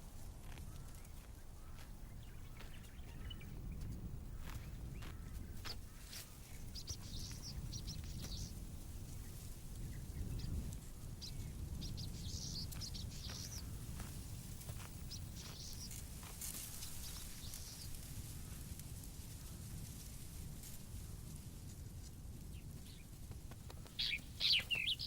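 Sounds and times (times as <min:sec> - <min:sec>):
small birds chirping: 0:00.6 - 0:20.4, 0:22.4 - 0:25.0
steady low rumble: 0:06.4 - 0:19.8
faint clicks and rustles: 0:12.7 - 0:24.0.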